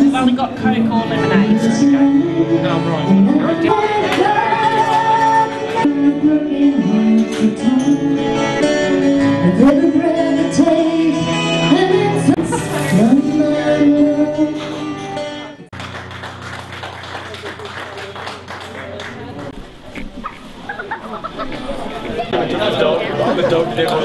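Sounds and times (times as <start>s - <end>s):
person singing: 0.0s - 15.6s
guitar accompaniment: 0.0s - 20.7s.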